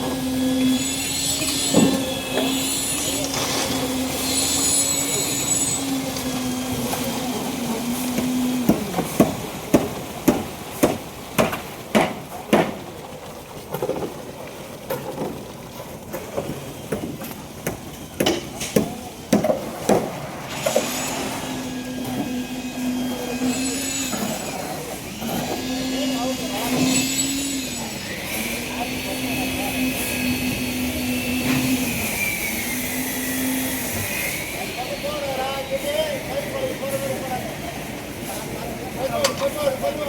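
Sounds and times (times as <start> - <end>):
construction machinery humming: 0.0 - 40.0
sharp knocks and clanks: 1.4 - 2.7, 8.1 - 13.0, 16.1 - 21.0, 39.2 - 39.7.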